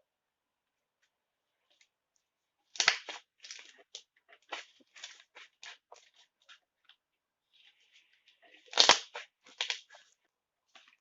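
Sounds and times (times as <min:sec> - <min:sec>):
slime squelch: 0:00.9 - 0:11.0
slime crackling and popping: 0:02.7 - 0:06.6, 0:08.3 - 0:10.1.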